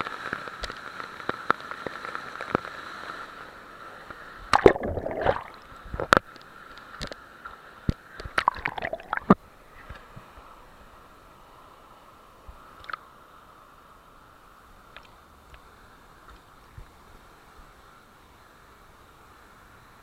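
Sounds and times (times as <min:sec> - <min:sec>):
water sloshing and gurgling: 0:04.5 - 0:06.2, 0:08.3 - 0:09.4.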